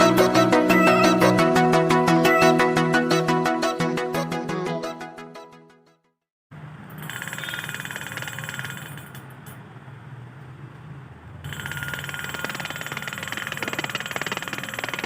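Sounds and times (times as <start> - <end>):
electric doorbell ringing: 7.0 - 9.2, 11.5 - 13.3.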